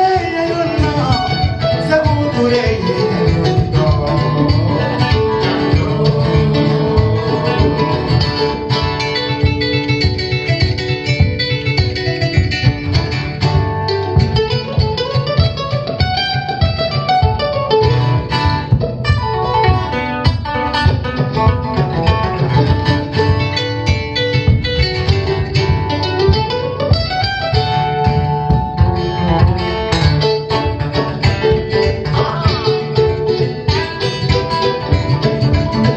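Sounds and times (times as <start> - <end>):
acoustic band playing: 0.0 - 35.9
plucked string runs: 0.0 - 35.9.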